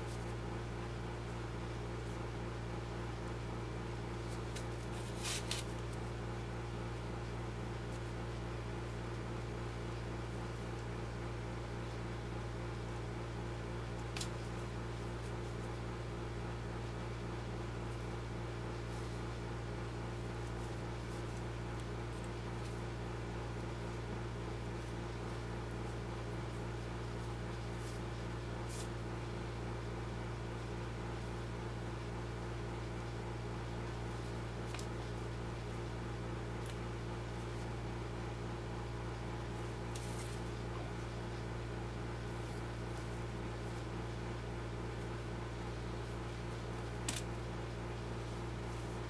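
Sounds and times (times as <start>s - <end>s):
steady mechanical hum: 0.0s - 49.0s.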